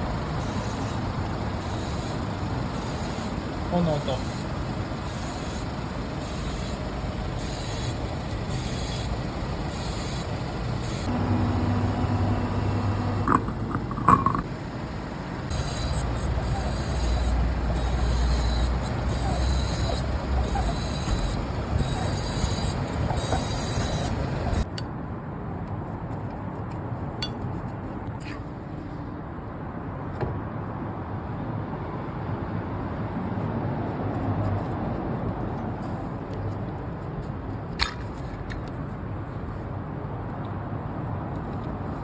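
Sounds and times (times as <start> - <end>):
rhythmic scraping hiss: 0.0 - 24.7
car running noise: 0.0 - 24.8.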